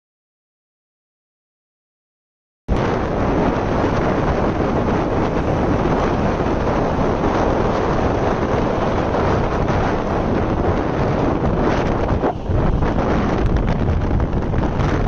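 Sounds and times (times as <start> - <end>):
wind blowing on microphone: 2.7 - 15.0.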